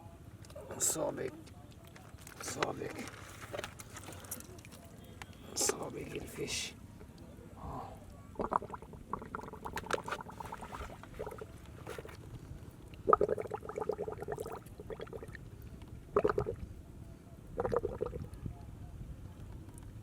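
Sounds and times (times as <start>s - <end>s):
muddy water gurgling and bubbling: 7.6s - 16.8s, 17.5s - 18.5s.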